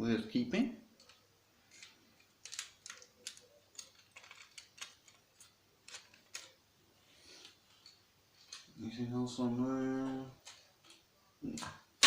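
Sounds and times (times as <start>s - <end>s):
clicks of small parts handled: 1.0s - 6.6s.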